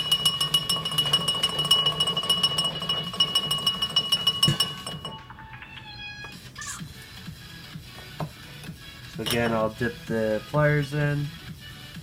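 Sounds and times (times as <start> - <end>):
glass clinking in drinking glass: 0.0 - 5.3, 9.2 - 9.6
glass ringing tone: 0.0 - 5.5.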